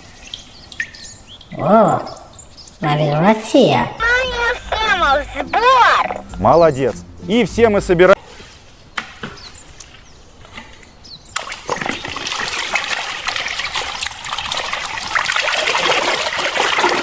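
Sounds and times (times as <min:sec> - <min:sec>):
water splashing on plastic toys: 0:00.0 - 0:03.4, 0:10.5 - 0:17.0.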